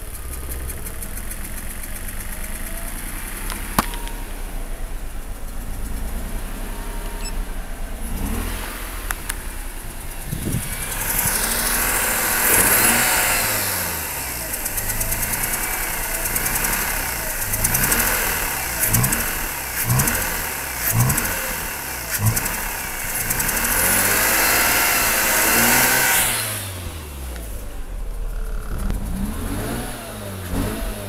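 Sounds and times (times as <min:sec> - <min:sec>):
rotary engine revving roughly: 0:07.9 - 0:31.0.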